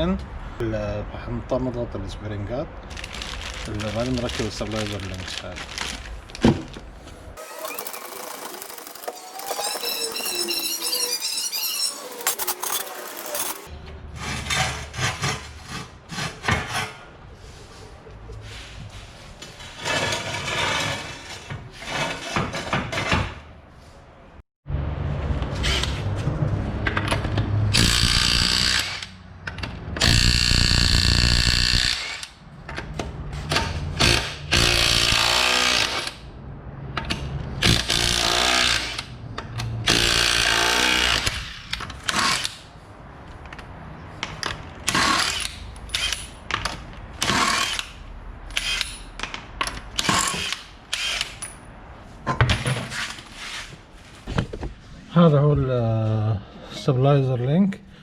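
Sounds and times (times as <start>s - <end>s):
impact wrench hammering: 34.0s - 36.2s.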